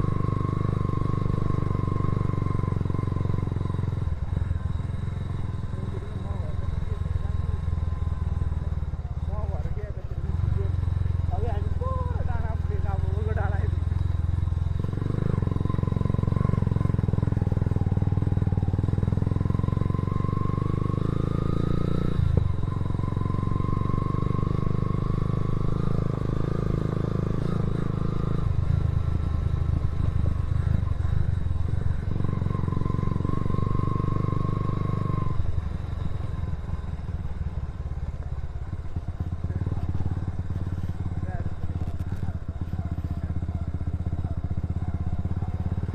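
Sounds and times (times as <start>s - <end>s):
faint whine: 0.0s - 20.6s
motorcycle engine running: 0.0s - 45.9s.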